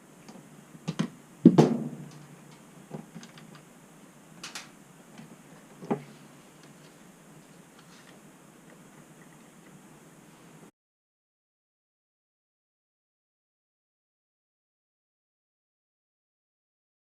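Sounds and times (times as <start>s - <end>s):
low steady hiss: 0.0s - 10.7s
knocks and clunks: 0.9s - 2.2s.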